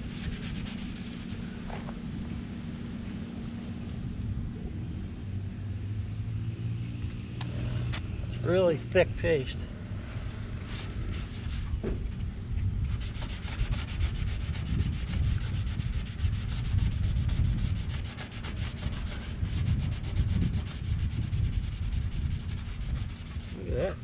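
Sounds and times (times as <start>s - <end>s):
rapid rhythmic rubbing on car paint: 0.0s - 1.6s, 10.4s - 11.9s, 12.8s - 24.0s.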